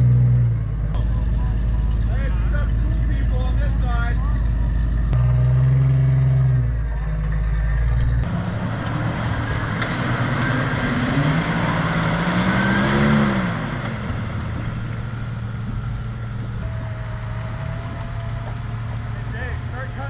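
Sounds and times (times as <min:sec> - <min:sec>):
truck engine revving: 0:00.0 - 0:20.0
churned mud and water rushing: 0:08.3 - 0:15.9.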